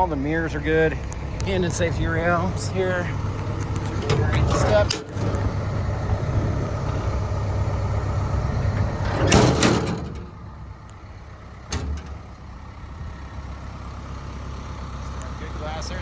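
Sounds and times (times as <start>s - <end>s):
diesel engine idling: 0.0s - 16.0s.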